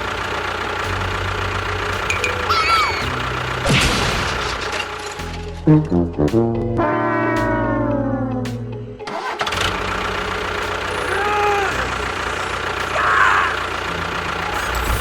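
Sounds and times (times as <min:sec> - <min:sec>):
motor running steadily: 0:00.0 - 0:03.7, 0:09.5 - 0:15.0.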